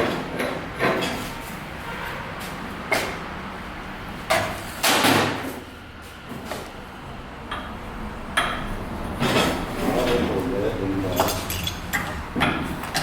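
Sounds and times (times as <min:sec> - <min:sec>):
hard objects knocking and clattering: 0:11.1 - 0:13.0.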